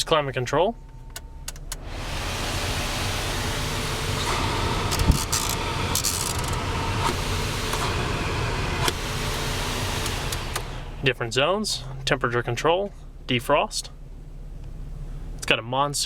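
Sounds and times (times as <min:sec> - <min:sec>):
car engine idling hum: 0:00.0 - 0:16.0
car blower fan rushing air: 0:01.6 - 0:11.7.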